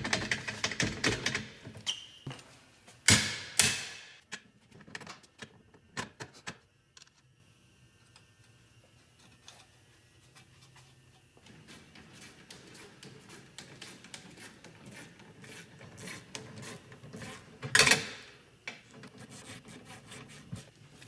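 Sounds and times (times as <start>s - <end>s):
metal tools clattering: 17.6s - 18.3s.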